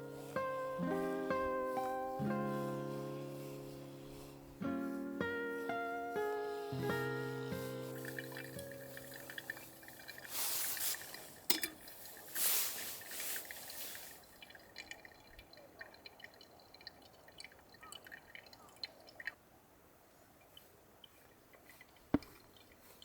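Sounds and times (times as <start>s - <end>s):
light dripping: 0.0s - 19.5s
liquid pouring hiss: 0.0s - 19.5s, 20.4s - 23.0s
small ticks: 6.1s - 19.4s, 20.4s - 23.0s.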